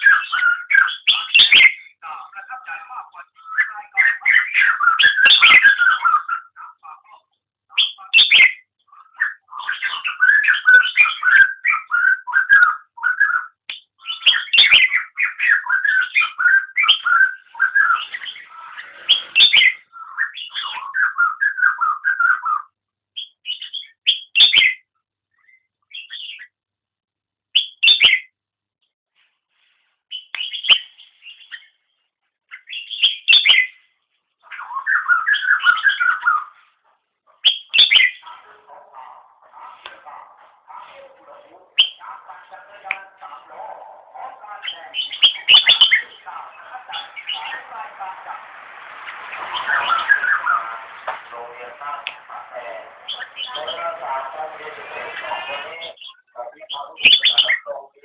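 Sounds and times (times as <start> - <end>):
bird singing whistled warbling phrases: 0.0 - 2.0, 3.4 - 6.6, 7.8 - 24.8, 27.6 - 28.3, 32.6 - 33.8, 34.5 - 36.5, 37.4 - 38.3, 44.7 - 46.2, 55.9 - 57.8.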